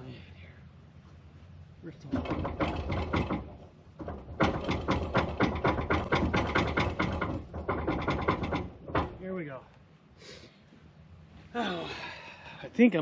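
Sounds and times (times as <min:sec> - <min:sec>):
steady low hum: 0:00.0 - 0:13.0
rapid mechanical clatter: 0:02.0 - 0:09.3.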